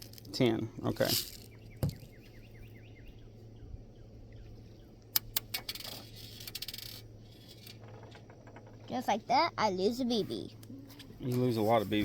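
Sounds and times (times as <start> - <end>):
low steady hum: 0.0 - 12.0
faint bird chirping: 1.4 - 6.4.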